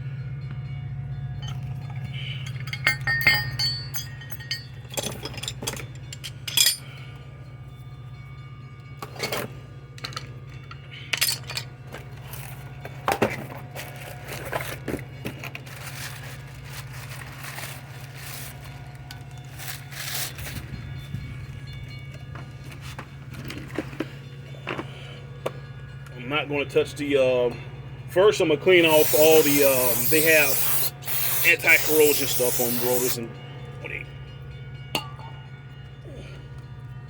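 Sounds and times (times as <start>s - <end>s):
metallic tool clinks: 1.4s - 7.0s, 9.0s - 11.7s, 28.8s - 33.3s.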